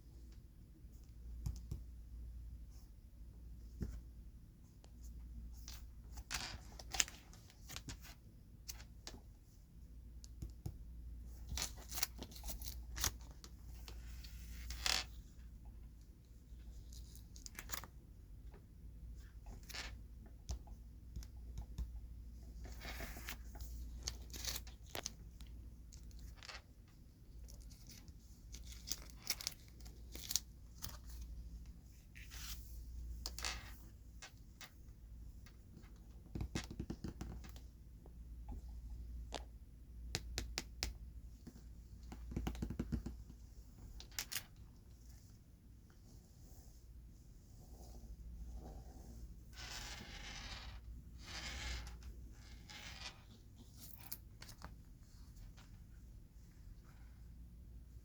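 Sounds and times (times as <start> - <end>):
low steady hum: 0.0 - 58.0
cards tapping and scratching: 36.2 - 37.6, 40.2 - 43.4.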